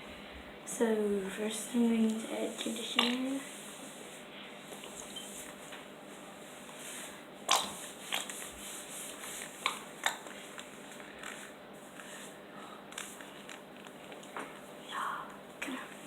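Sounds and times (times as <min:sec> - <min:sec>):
plastic bottles squeezed: 0:07.5 - 0:08.4.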